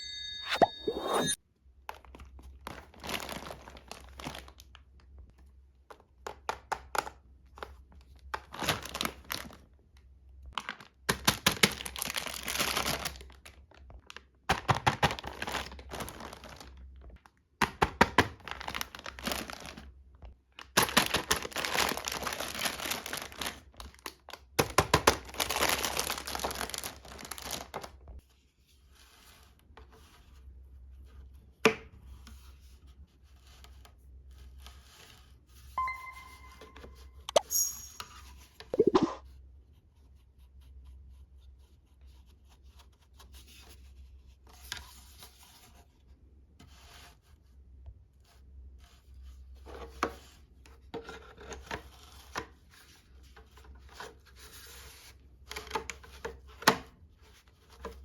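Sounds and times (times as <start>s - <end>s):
plastic packaging crinkling and tearing: 2.6s - 4.7s, 8.5s - 9.6s, 10.6s - 14.2s, 14.8s - 16.8s, 18.3s - 19.8s, 20.8s - 24.3s, 25.0s - 27.9s.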